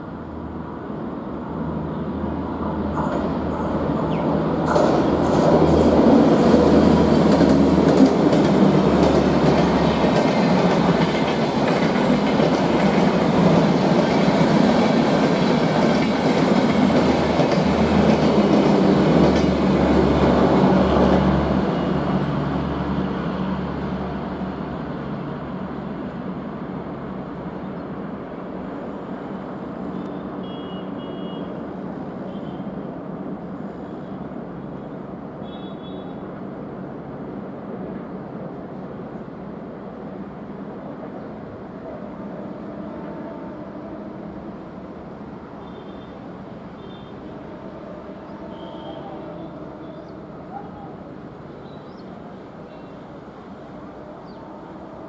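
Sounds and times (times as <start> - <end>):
train wheels clattering: 3.0 - 19.8.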